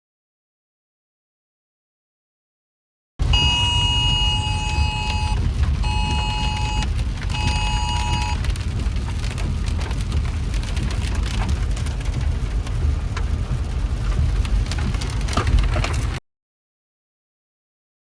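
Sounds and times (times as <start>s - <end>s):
heavy rain pouring: 3.2s - 16.2s
two-tone alert beep: 3.4s - 8.4s
wind buffeting microphone: 3.4s - 16.2s.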